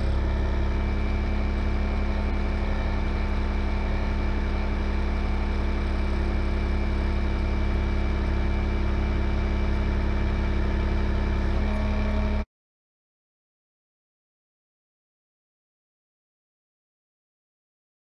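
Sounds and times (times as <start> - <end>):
vehicle engine humming: 0.0 - 12.4.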